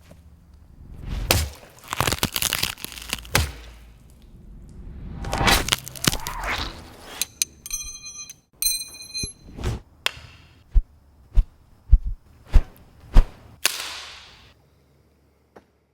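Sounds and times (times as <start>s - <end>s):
noisy whoosh burst: 3.8s - 6.5s
short ringing pings: 7.6s - 9.5s.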